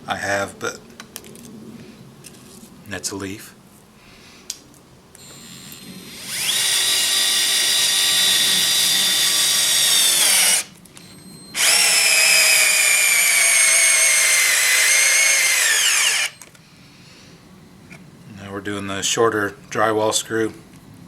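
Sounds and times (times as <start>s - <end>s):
cordless screwdriver motor whining: 5.2s - 16.5s.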